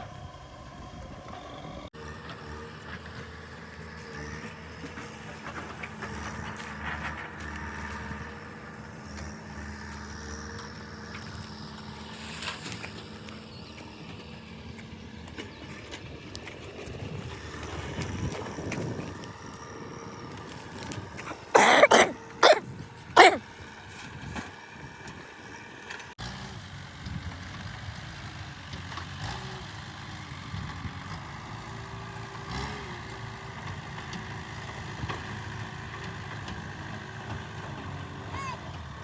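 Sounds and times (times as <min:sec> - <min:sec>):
distant engine running: 0:00.1 - 0:26.1.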